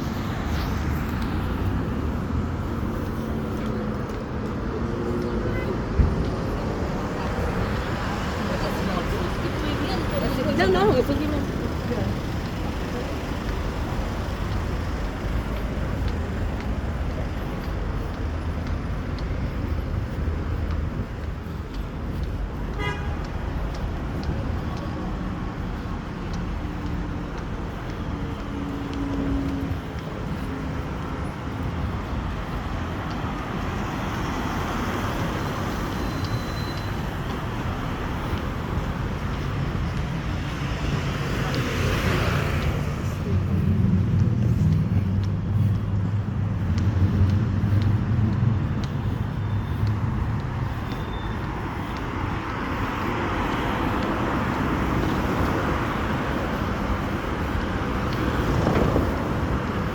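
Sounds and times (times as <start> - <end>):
vehicle passing: 37.4 - 59.9.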